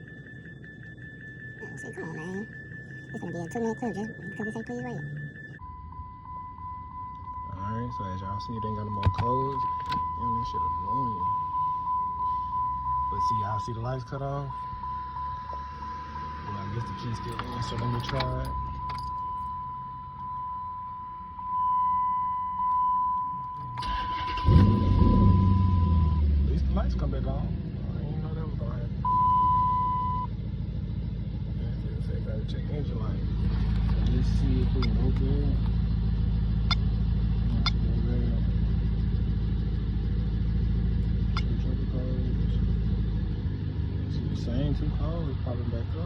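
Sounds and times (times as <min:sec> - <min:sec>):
electronic warning tone: 0:00.0 - 0:26.3, 0:29.0 - 0:30.3, 0:34.2 - 0:35.5
car engine cranking and starting: 0:00.0 - 0:46.0.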